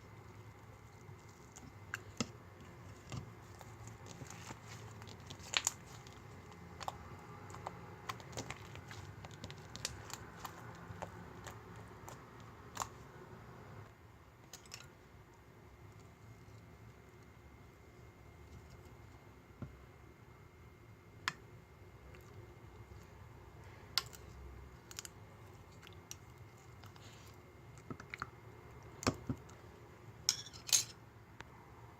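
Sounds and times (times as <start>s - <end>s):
slime squished by hand: 0.8s - 13.1s.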